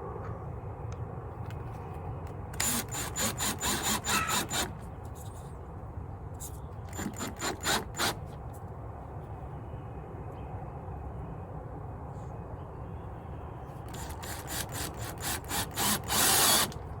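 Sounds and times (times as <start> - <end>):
hand tool rasping strokes: 2.6 - 4.7, 6.9 - 8.2, 13.9 - 16.8.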